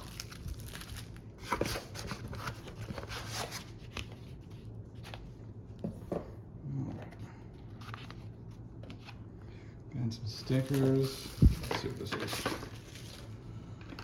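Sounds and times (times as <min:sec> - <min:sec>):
packing material rustling: 0:00.0 - 0:03.6, 0:10.4 - 0:13.4.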